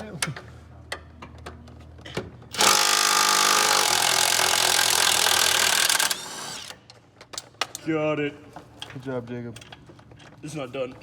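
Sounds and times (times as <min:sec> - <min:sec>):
power tool loosening bolt: 0:02.5 - 0:06.8.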